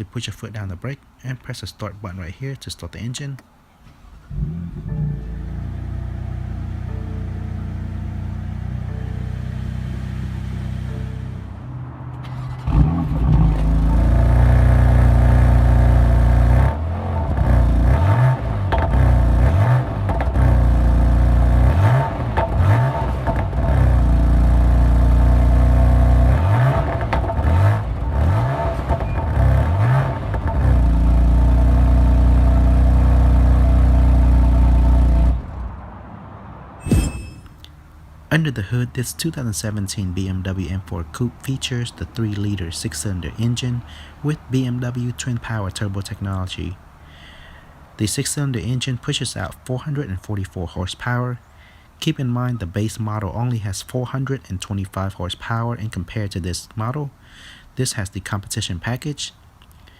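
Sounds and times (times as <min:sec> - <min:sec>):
car engine idling and revving: 0:03.9 - 0:36.8.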